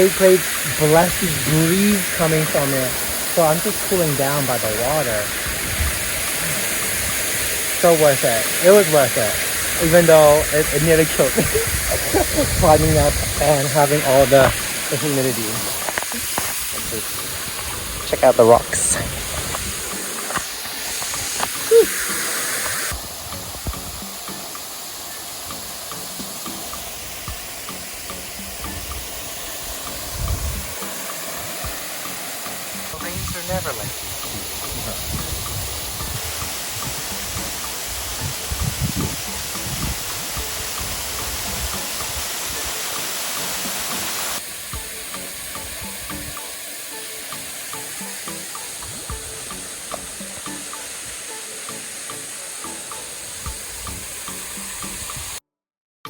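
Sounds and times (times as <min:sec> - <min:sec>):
waterfall rushing: 0:00.0 - 0:55.4
background music with repeating notes: 0:22.9 - 0:55.3.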